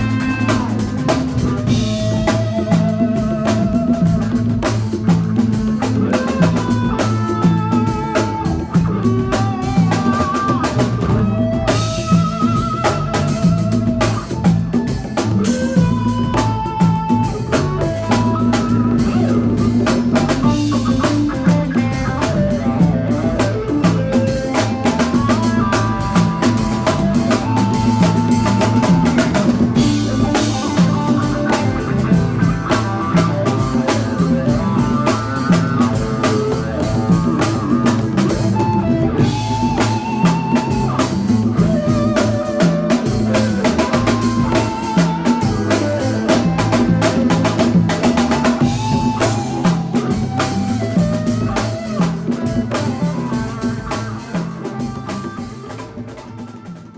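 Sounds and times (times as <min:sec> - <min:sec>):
drum kit played hard: 0:00.0 - 0:56.9
live band music: 0:00.0 - 0:56.9.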